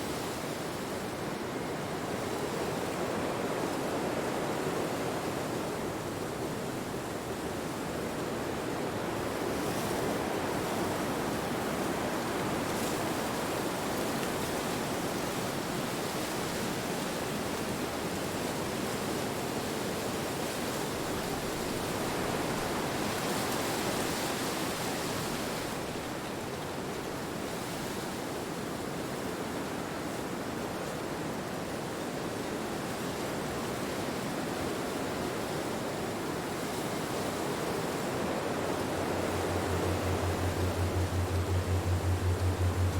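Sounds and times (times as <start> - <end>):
wind blowing: 37.6 - 42.9.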